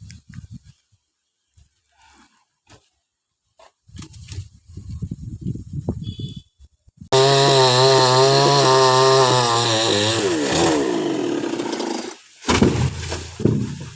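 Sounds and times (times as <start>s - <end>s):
chainsaw running: 7.1s - 12.2s.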